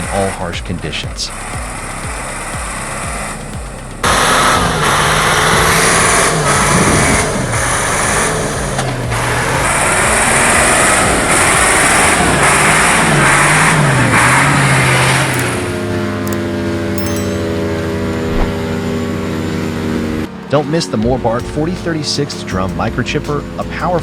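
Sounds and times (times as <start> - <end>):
loud mechanical noise: 0.0 - 16.9.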